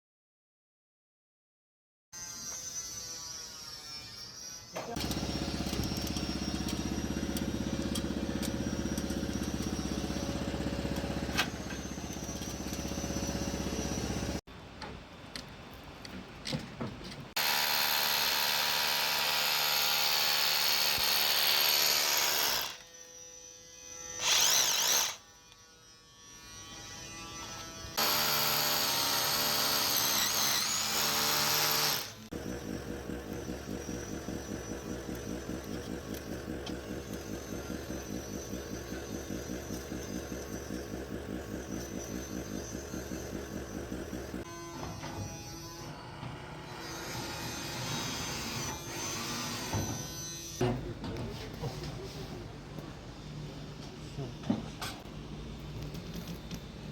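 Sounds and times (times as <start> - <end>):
power tool whine: 2.2 - 14.4, 17.4 - 50.6.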